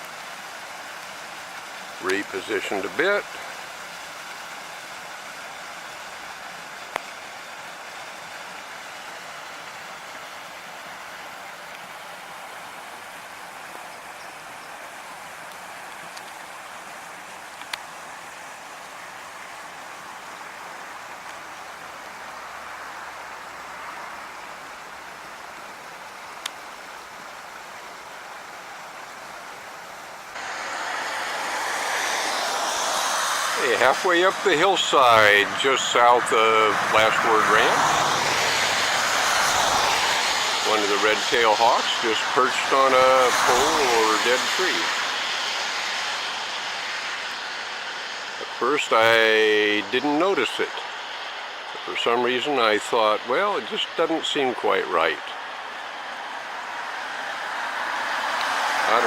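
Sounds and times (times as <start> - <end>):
creek and waterfall rushing: 0.0 - 59.0
bright rushing noise: 30.4 - 55.4.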